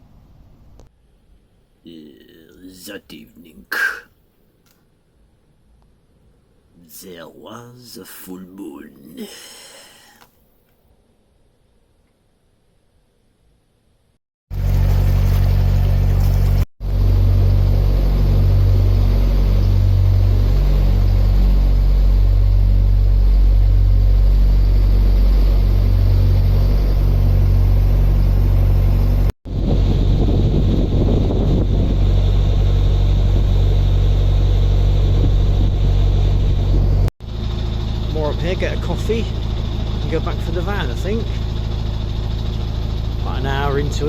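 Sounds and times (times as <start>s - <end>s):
diesel engine drone: 6.8s - 10.4s, 14.5s - 44.0s
wind or water noise: 14.5s - 44.0s.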